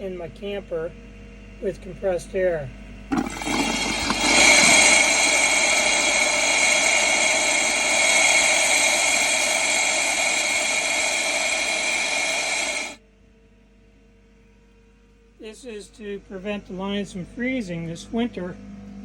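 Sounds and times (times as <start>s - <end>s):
compressed air hissing: 3.1s - 13.0s.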